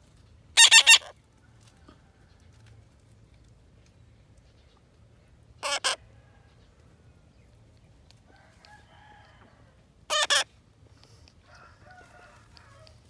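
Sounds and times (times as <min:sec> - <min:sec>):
bird squawking: 0:00.6 - 0:01.1, 0:10.1 - 0:10.5.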